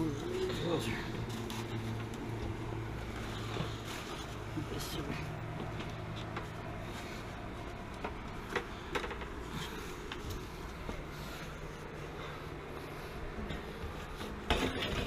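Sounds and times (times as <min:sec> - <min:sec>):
low steady hum: 0:00.0 - 0:15.0
tank knocking and scraping: 0:13.5 - 0:15.0.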